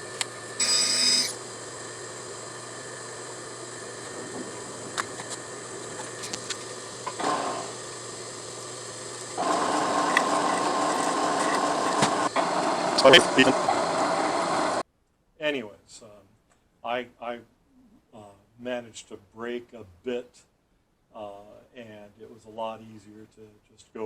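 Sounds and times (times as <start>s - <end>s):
milling machine drilling: 0.0s - 14.8s.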